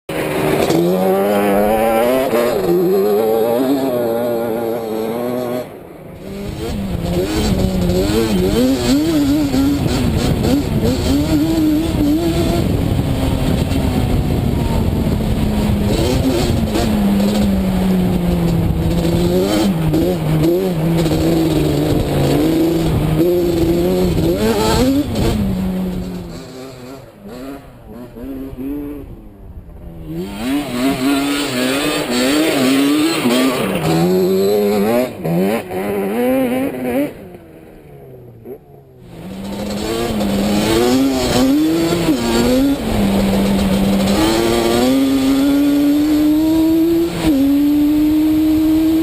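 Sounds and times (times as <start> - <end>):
two-stroke quad engine revving: 0.1 - 49.0.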